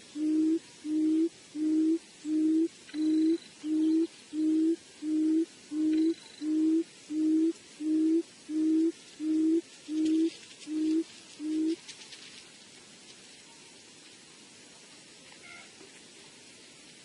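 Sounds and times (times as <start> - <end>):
low hooting call: 0.0 - 11.8
faint high chirps: 0.1 - 11.8.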